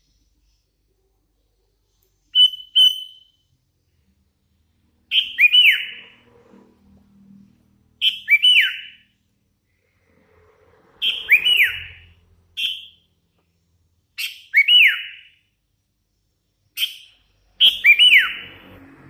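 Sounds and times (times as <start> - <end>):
bird whistling: 2.3 - 3.4, 5.1 - 6.2, 8.0 - 9.1, 11.0 - 13.1, 14.2 - 15.4, 16.8 - 18.6.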